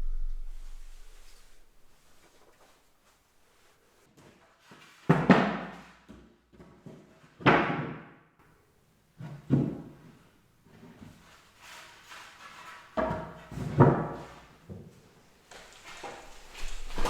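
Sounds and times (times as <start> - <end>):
loud ringing thuds: 0.0 - 1.5.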